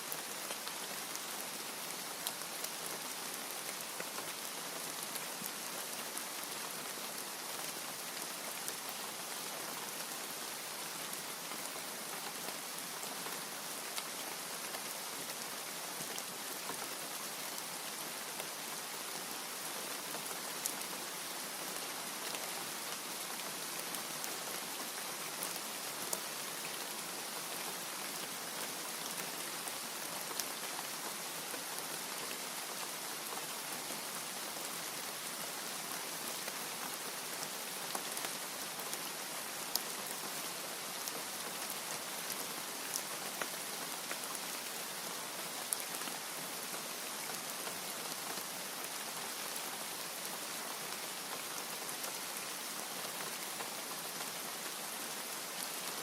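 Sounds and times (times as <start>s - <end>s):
steady rain hissing: 0.0s - 56.0s.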